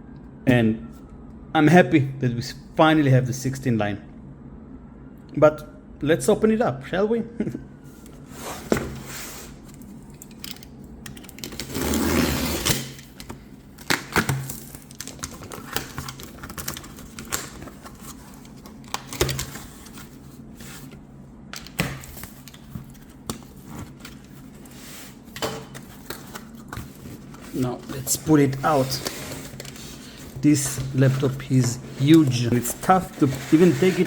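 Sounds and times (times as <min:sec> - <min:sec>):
packaging clicks and rustles: 0:09.7 - 0:20.3, 0:21.6 - 0:34.0
cardboard scraping and tearing: 0:11.6 - 0:13.0, 0:22.2 - 0:34.0.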